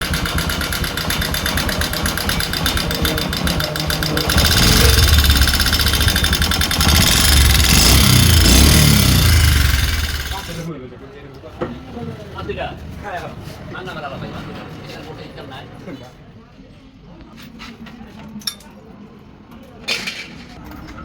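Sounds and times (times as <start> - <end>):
motorcycle engine revving: 0.0 - 10.7.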